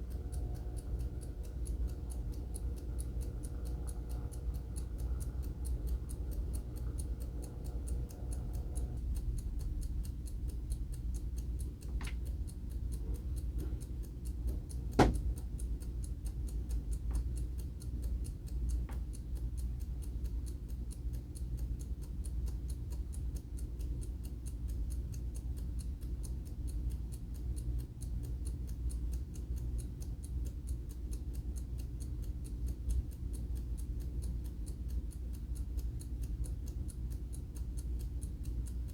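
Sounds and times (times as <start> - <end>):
alarm clock ticking: 0.0 - 38.9
sharp click: 14.9 - 15.4.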